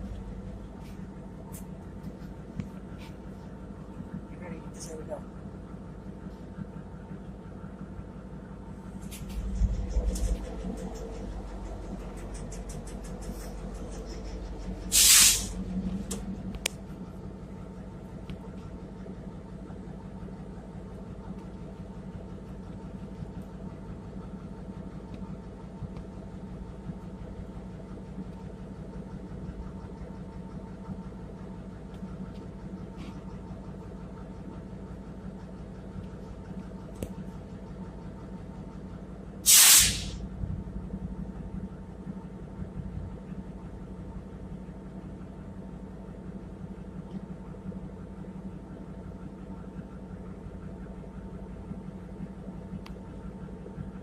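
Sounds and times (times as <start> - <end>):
train mechanical drone: 0.0 - 54.0
short loud hiss: 14.9 - 15.5, 39.5 - 40.2.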